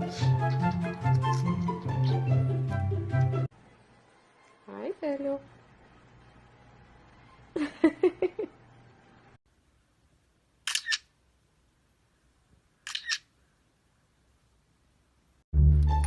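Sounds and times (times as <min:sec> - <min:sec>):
camera shutter clicks: 0:10.7 - 0:11.1, 0:12.9 - 0:13.3.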